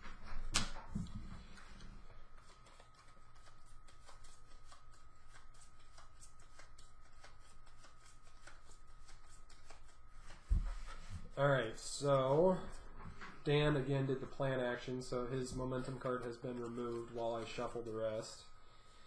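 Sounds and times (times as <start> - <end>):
cards being shuffled: 2.3 - 11.1.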